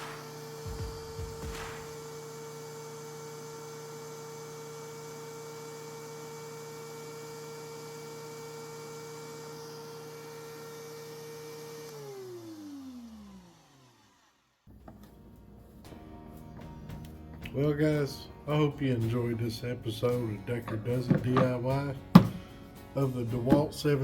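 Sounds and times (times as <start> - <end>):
planer motor whine: 0.0 - 15.0.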